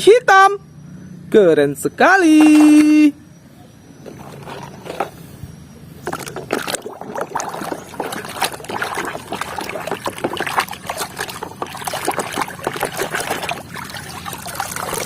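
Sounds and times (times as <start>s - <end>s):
water trickling and splashing: 2.4s - 3.0s, 6.0s - 15.0s.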